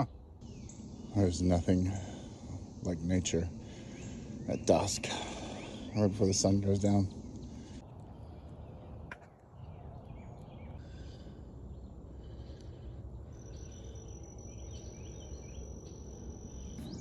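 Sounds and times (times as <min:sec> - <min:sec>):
low steady rumble: 0:00.0 - 0:09.1
birds calling: 0:00.0 - 0:17.0
high insect trill: 0:00.4 - 0:07.5, 0:13.4 - 0:17.0.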